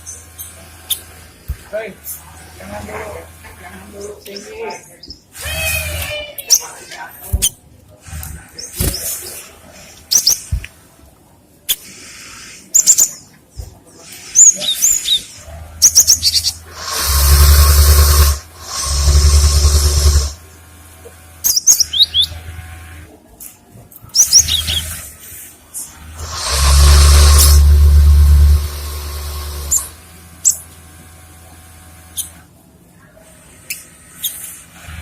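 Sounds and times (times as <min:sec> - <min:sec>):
harsh noisy bursts: 0:14.0 - 0:23.1, 0:24.2 - 0:32.4.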